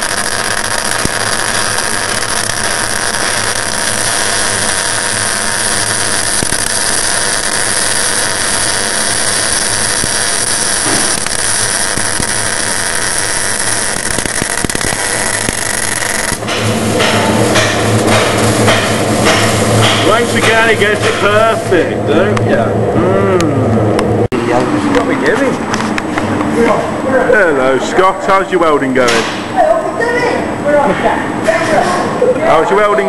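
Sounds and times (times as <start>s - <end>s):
arc welder hissing: 0.0s - 22.0s.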